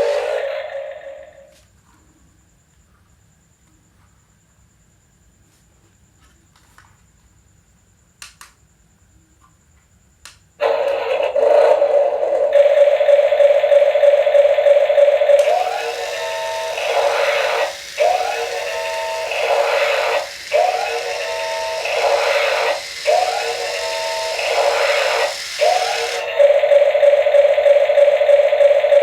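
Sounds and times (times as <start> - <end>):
looped electronic tones: 15.4 - 27.1
steady electronic tone: 15.4 - 28.4.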